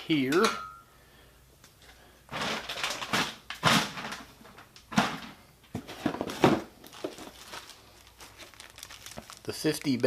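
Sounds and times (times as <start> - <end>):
packaging rustling: 2.3 - 4.7, 5.7 - 10.0.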